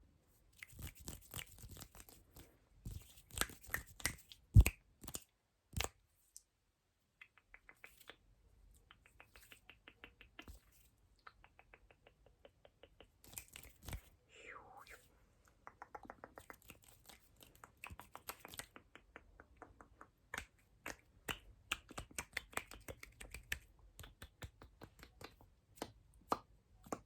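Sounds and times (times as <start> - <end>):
wet mouth clicks and smacks: 2.9 - 6.0, 7.2 - 8.2, 8.8 - 14.1, 15.4 - 25.4.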